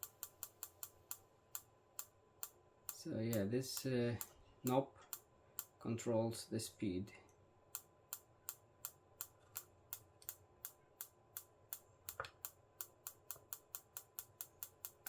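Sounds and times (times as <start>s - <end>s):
strobe flash ticking: 0.0s - 5.8s, 7.7s - 15.0s.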